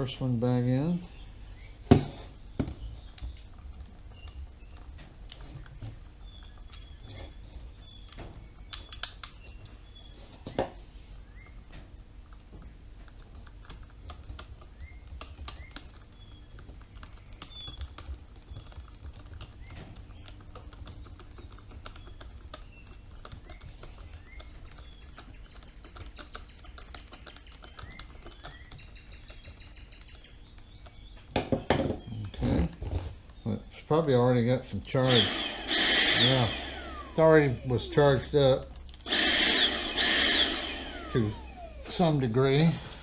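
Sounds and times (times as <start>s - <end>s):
faint high chirps: 35.0s - 38.4s.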